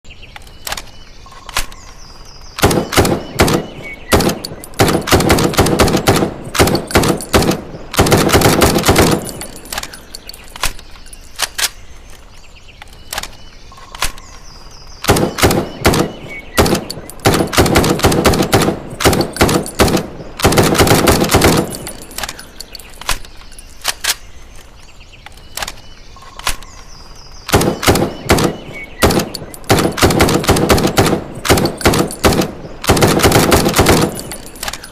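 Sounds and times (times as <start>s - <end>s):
rifle shots and bursts: 2.6s - 10.8s, 15.0s - 22.6s, 27.5s - 34.9s.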